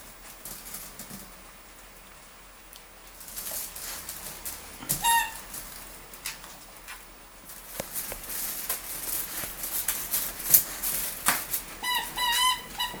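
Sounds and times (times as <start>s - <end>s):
squeaky dog toy squeaking: 5.0s - 5.4s, 11.8s - 13.0s.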